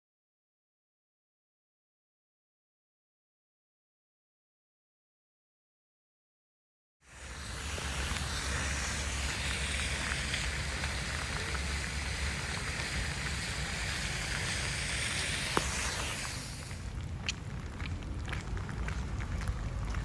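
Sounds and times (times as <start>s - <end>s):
wind and rain rushing: 7.0s - 20.0s.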